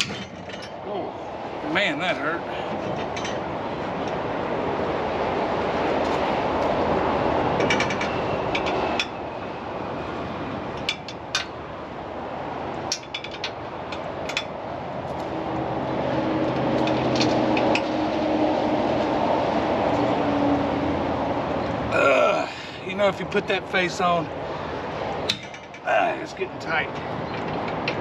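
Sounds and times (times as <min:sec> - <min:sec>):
metal tools clinking on rack: 0:00.0 - 0:00.8, 0:25.3 - 0:25.8
steady background noise: 0:00.0 - 0:28.0.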